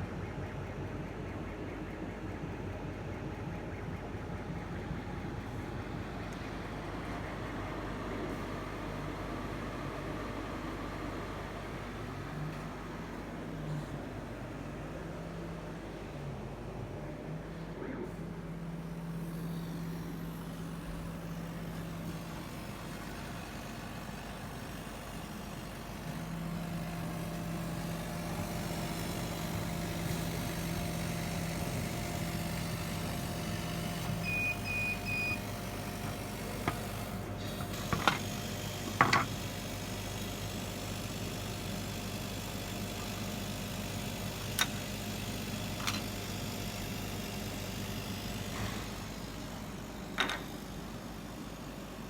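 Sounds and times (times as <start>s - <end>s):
laser machine mechanical hum: 0.0s - 52.0s
low motor tone: 11.8s - 40.3s.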